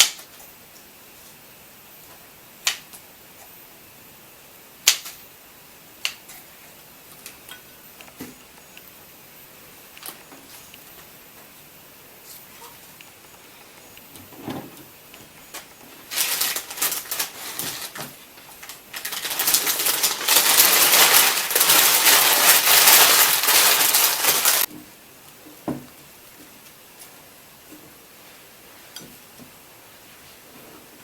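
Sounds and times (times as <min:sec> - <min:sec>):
crackling rustling noise: 0:06.1 - 0:24.7.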